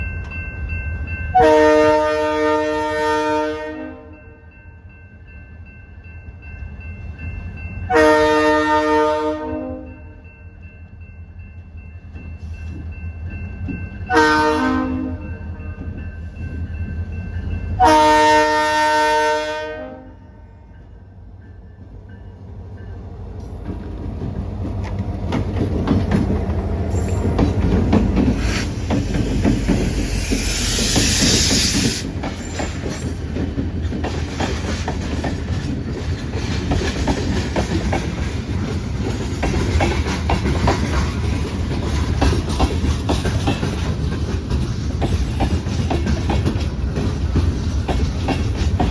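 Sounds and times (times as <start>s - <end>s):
freight train engine rumble: 0.0s - 48.9s
wheels clicking over rail joints: 23.4s - 48.9s
burst of hiss: 28.4s - 29.1s, 29.9s - 32.1s.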